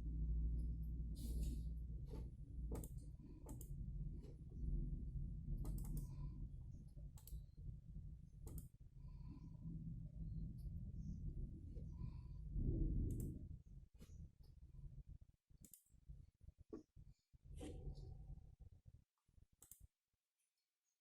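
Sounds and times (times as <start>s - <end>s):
steady low hum: 0.0s - 18.9s
computer mouse clicks: 2.7s - 3.8s, 5.6s - 6.2s, 7.1s - 7.4s, 8.4s - 8.7s, 13.1s - 13.4s, 15.6s - 15.9s, 19.6s - 19.9s.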